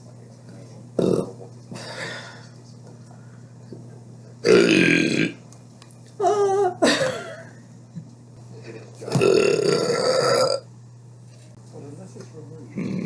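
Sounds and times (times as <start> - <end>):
person burping: 1.0 - 1.3, 4.4 - 5.4, 9.1 - 10.7.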